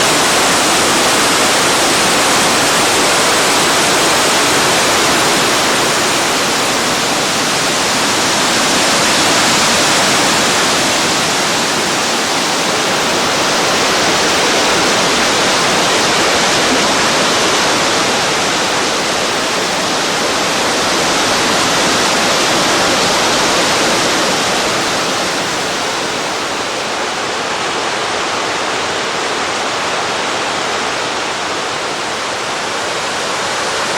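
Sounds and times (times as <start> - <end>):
water rushing down waterfall: 0.0 - 33.9.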